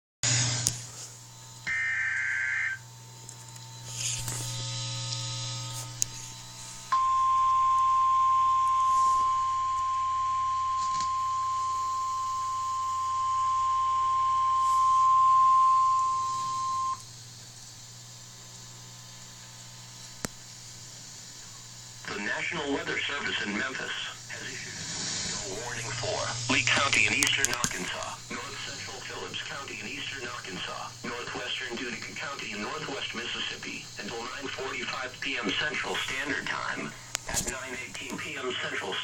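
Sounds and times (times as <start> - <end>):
steady warning alarm tone: 0.3 - 17.0, 22.3 - 39.0
digital data burst: 22.1 - 39.0.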